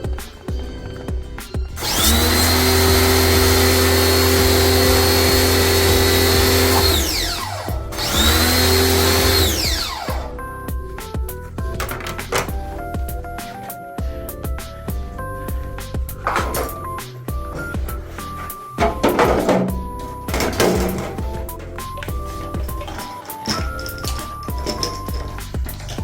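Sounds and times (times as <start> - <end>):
power tool motor spinning: 1.8 - 10.3.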